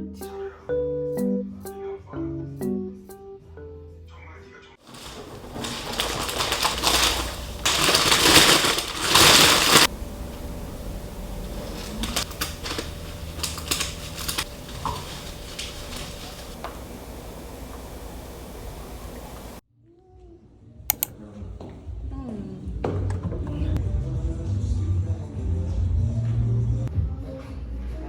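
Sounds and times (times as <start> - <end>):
light crinkles and clicks: 4.8 - 19.6
wrapping crumpling and rustling: 4.8 - 19.6.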